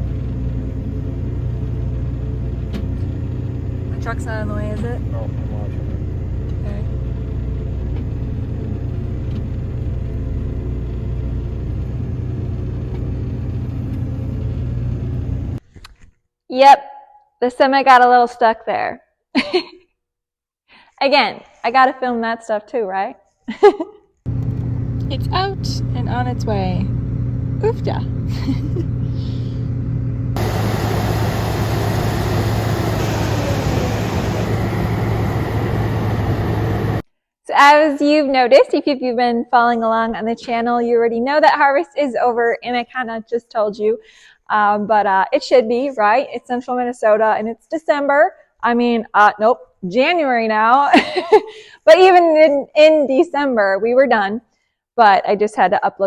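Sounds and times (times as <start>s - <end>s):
diesel engine running: 0.0s - 15.6s, 24.3s - 37.0s
rushing hiss: 30.4s - 37.0s.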